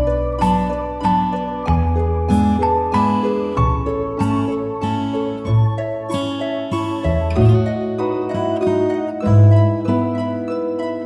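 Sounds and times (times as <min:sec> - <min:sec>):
bass line: 0:00.0 - 0:06.0, 0:07.0 - 0:08.6
plucked strings music: 0:00.0 - 0:11.0.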